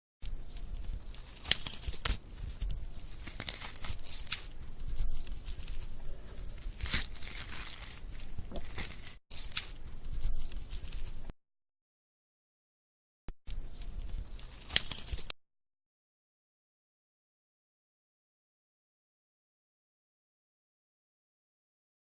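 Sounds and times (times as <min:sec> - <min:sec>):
ripping with sharp snaps: 0:00.2 - 0:11.3, 0:13.7 - 0:15.3.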